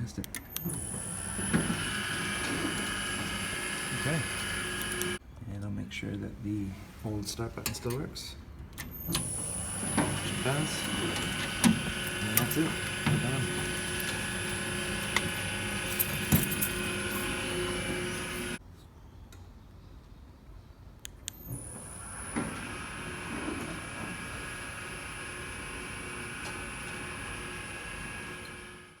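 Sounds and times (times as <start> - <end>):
motorised garage door running: 0.5 - 5.2, 8.9 - 18.6, 21.4 - 29.0.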